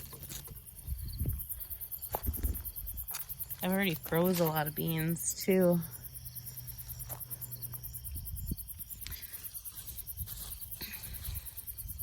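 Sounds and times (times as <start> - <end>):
plants rustling and clicking: 0.0 - 0.8
crickets chirping: 0.0 - 12.0
low wind rumble: 0.7 - 3.1, 5.8 - 9.4.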